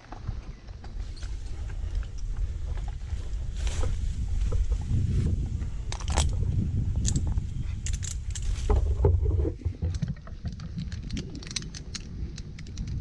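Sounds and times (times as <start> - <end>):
wind rumble on microphone: 0.0 - 13.0
sharp clicks and rustles: 5.8 - 13.0.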